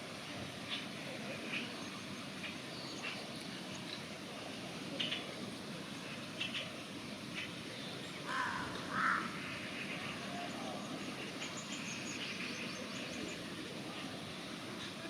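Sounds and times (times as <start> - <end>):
steady background hiss: 0.0 - 15.0
raven harsh calls: 8.3 - 10.2.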